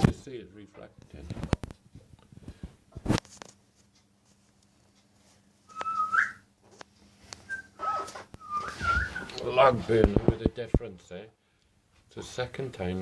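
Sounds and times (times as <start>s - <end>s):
short whistled note: 8.4s - 9.3s.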